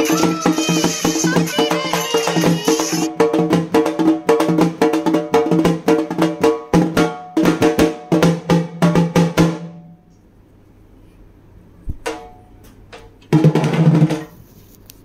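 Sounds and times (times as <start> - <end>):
frame drum beaten in fast rhythm: 0.0 - 9.8, 13.3 - 14.3.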